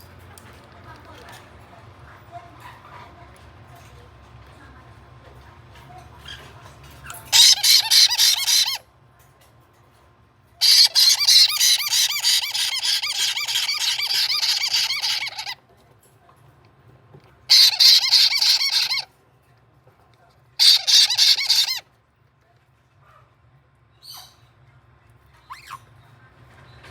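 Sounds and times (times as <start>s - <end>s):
parrot chick begging squawks: 6.2s - 8.8s, 10.6s - 15.6s, 17.5s - 19.1s, 20.6s - 21.8s.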